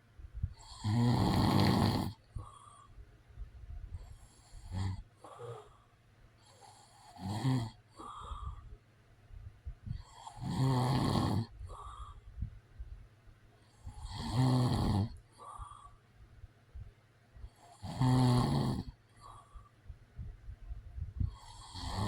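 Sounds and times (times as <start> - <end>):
soft breaths: 0.0 - 17.9, 18.8 - 22.0
man snoring: 0.6 - 2.6, 4.3 - 5.7, 6.5 - 8.5, 10.0 - 12.0, 13.9 - 15.8, 17.6 - 19.4, 21.3 - 22.0.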